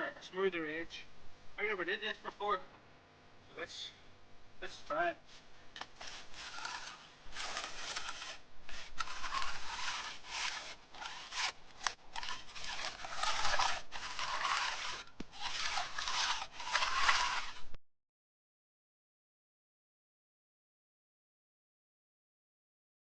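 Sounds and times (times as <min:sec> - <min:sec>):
tool scraping wet concrete: 0:05.8 - 0:17.8.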